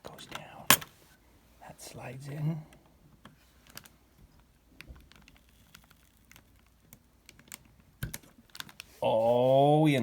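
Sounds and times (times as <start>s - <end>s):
faint clicks of hardware handling: 2.7s - 8.9s.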